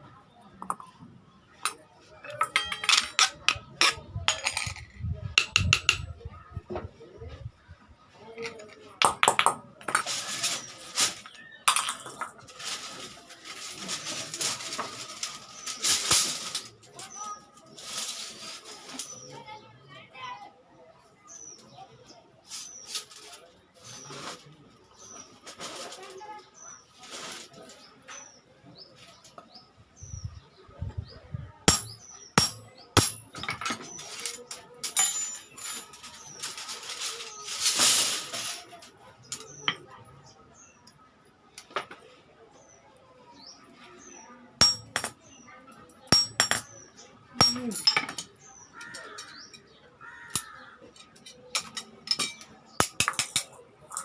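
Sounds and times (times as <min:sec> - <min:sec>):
hammer striking iron: 0:31.7 - 0:33.4, 0:44.6 - 0:45.2.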